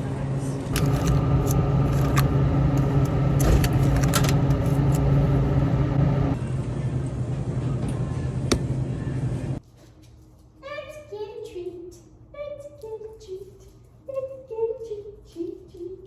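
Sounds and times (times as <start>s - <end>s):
road rumble: 0.0s - 9.6s
car engine hum: 0.4s - 6.4s.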